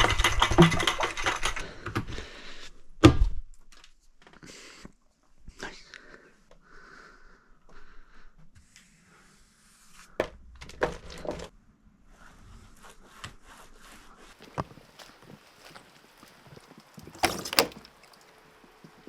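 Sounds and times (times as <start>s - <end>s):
rustling: 12.3s - 19.0s
sharp knocks and thumps: 14.4s - 18.2s.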